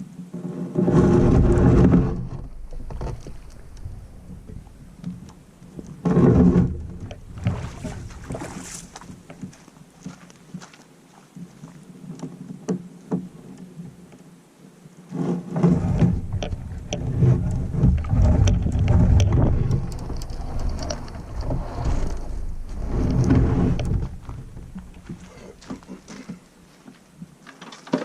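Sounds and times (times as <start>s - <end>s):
wind buffeting microphone: 0.9s - 9.6s, 15.8s - 26.3s.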